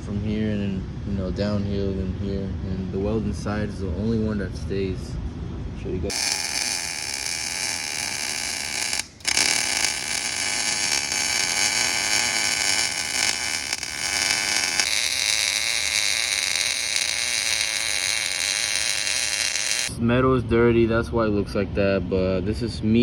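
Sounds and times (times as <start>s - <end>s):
arc welding crackle and hiss: 6.1s - 19.9s.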